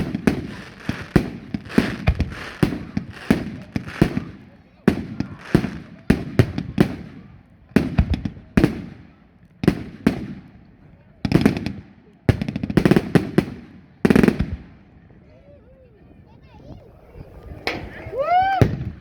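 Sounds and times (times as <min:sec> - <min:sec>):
fireworks banging: 0:00.0 - 0:09.0, 0:11.3 - 0:14.8, 0:16.4 - 0:19.0.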